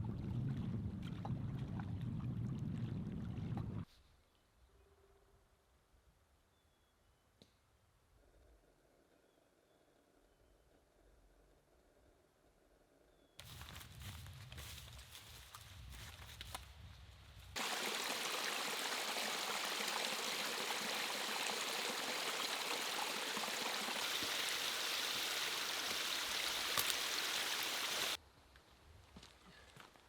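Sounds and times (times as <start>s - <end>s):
faint low rumble: 0.0s - 3.8s
stream water rushing: 17.6s - 28.2s.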